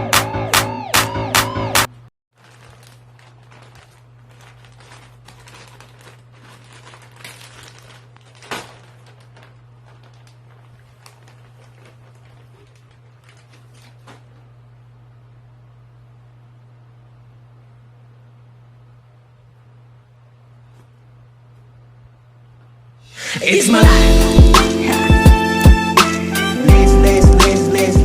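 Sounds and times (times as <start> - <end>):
packaging rustling and crackling: 2.4 - 14.6
song playing: 23.3 - 28.0.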